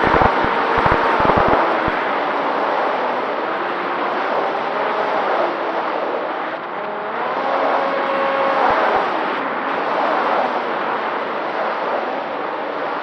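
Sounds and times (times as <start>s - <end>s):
rushing air noise: 0.0s - 3.0s
electric motor propeller whine: 0.0s - 13.0s.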